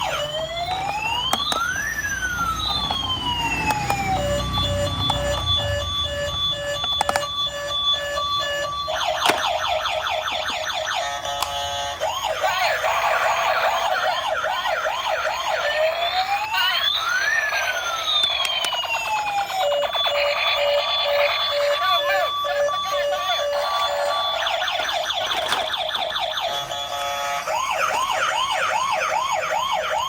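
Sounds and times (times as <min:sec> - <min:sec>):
toy siren wailing: 0:00.0 - 0:30.0
pulsed electronic beeping: 0:02.4 - 0:09.2, 0:16.9 - 0:27.4.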